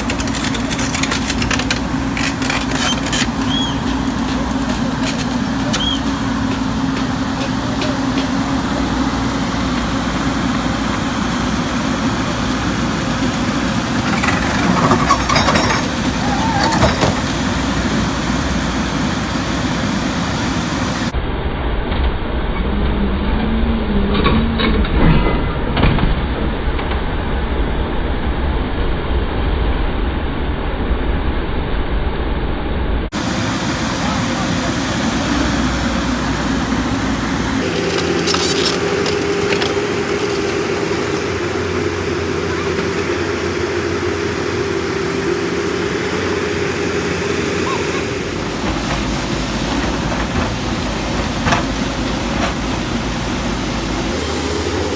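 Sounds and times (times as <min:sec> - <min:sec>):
excavator diesel engine running: 0:00.0 - 0:21.2, 0:33.1 - 0:54.9.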